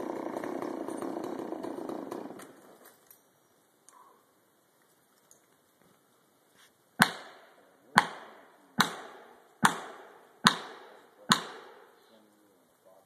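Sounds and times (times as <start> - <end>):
axe chopping a tree: 7.0 - 7.4, 8.0 - 11.7.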